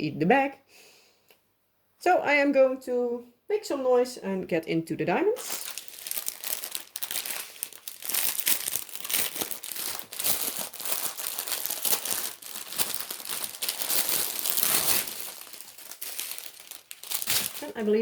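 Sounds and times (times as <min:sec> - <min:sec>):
packaging crinkling and rustling: 0:05.4 - 0:18.0.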